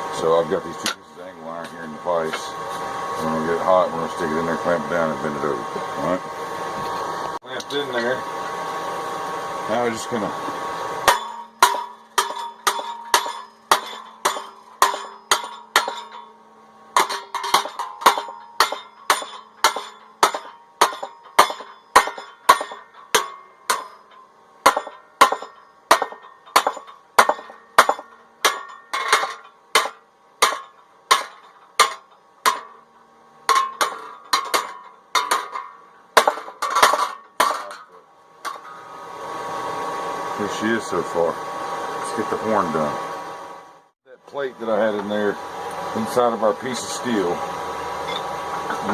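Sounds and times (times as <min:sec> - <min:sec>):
hammer striking sheet metal: 0:11.0 - 0:38.8.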